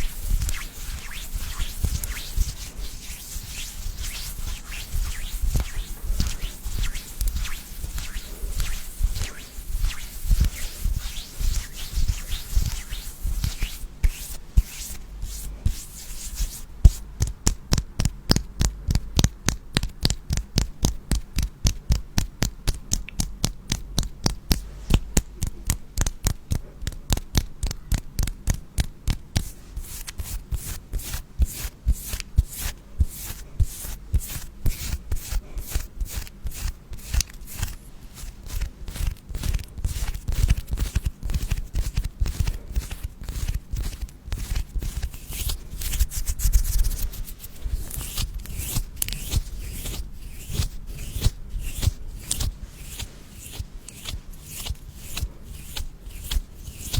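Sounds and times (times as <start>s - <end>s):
rustling: 0.0s - 17.1s, 37.0s - 56.9s.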